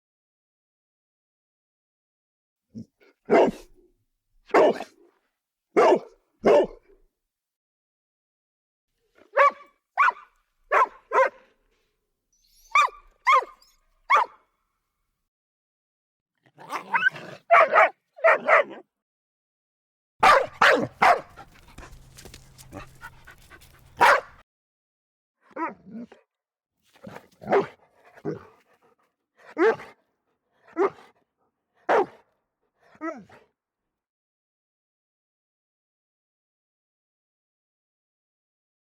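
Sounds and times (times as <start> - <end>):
dogs barking: 3.3 - 3.7, 4.5 - 4.9, 5.8 - 6.8, 9.4 - 11.5, 12.7 - 14.4, 16.9 - 18.8, 20.2 - 24.4, 27.4 - 28.5, 29.6 - 29.9, 31.9 - 32.2.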